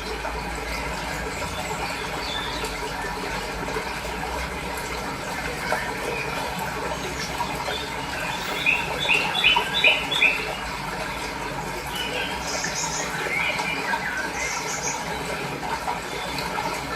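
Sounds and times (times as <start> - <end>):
water running: 0.0 - 16.9
small bird chirping: 7.7 - 10.6.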